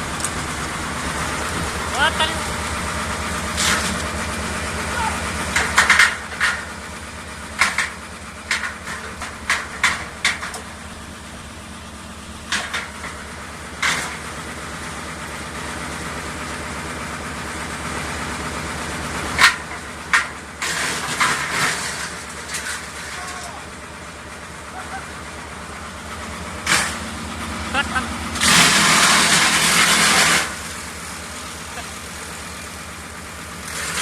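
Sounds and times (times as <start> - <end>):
wood chipper engine running: 0.0 - 34.0
sharp cracks and knocks: 5.5 - 6.8, 7.6 - 10.7, 12.5 - 13.2, 13.8 - 14.2, 19.4 - 23.5, 26.6 - 27.0.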